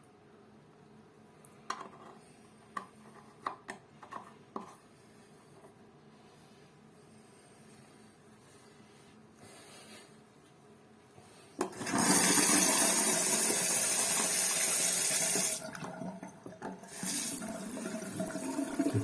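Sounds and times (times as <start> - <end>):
water running from a tap: 11.8 - 15.9, 16.8 - 19.0.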